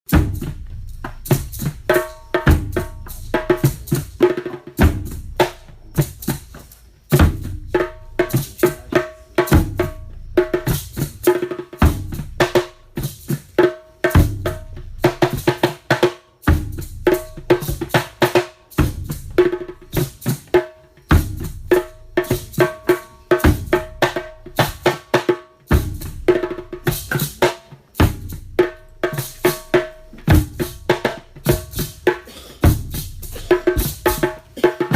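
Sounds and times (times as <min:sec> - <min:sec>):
deep bass drum beat: 0:00.1 - 0:04.2, 0:04.8 - 0:06.3, 0:07.1 - 0:13.1, 0:14.2 - 0:15.5, 0:16.5 - 0:18.0, 0:18.8 - 0:20.2, 0:21.1 - 0:22.7, 0:23.4 - 0:24.8, 0:25.7 - 0:27.4, 0:28.0 - 0:34.9
pitched hand drum strokes: 0:00.1 - 0:34.9.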